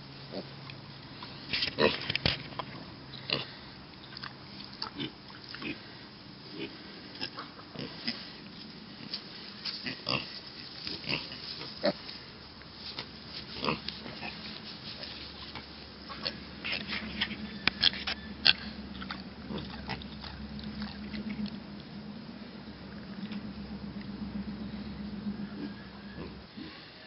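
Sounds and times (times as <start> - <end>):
pig grunting: 4.8 - 8.3, 9.8 - 12.1, 13.4 - 26.8.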